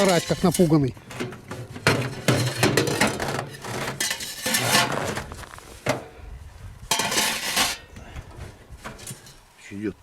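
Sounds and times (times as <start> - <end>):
metal parts rustling and clinking: 0.0 - 6.0.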